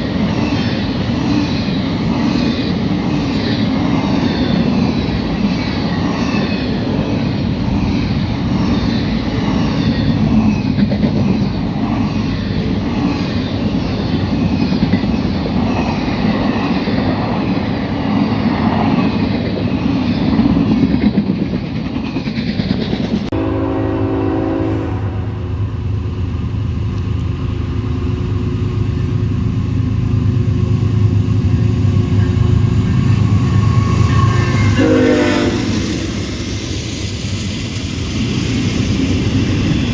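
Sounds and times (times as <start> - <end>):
train wheels rumbling on rails: 0.0 - 39.9
locomotive engine drone: 23.2 - 39.9
locomotive horn blast: 23.3 - 25.7, 33.8 - 35.8.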